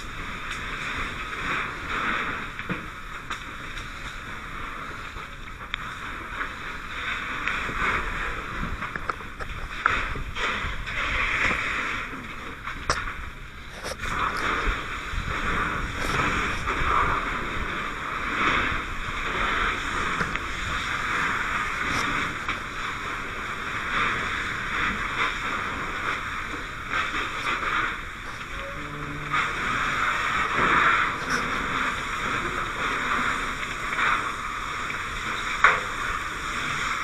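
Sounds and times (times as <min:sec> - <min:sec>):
hose spraying water: 0:12.9 - 0:37.0.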